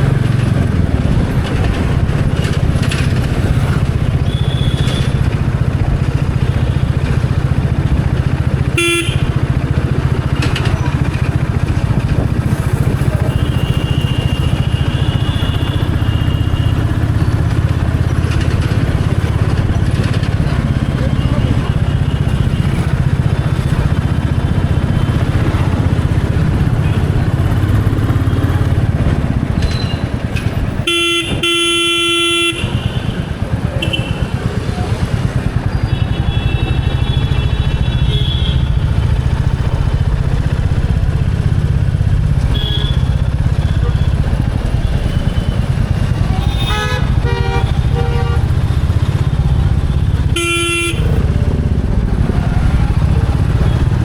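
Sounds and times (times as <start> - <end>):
vehicle horns honking: 4.2 - 5.3, 8.5 - 9.7, 13.1 - 17.7, 30.8 - 34.4, 35.6 - 38.8, 42.4 - 44.3, 45.0 - 48.8, 50.1 - 51.6.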